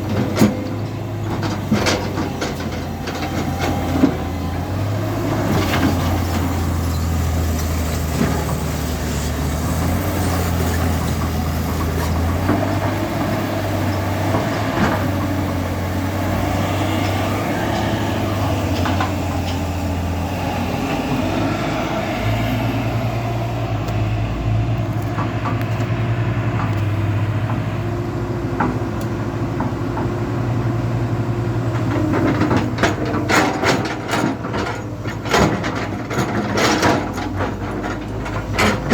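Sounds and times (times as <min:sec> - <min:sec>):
heavy diesel machinery running: 0:00.0 - 0:38.9
metal knocks and clanks: 0:31.8 - 0:38.9.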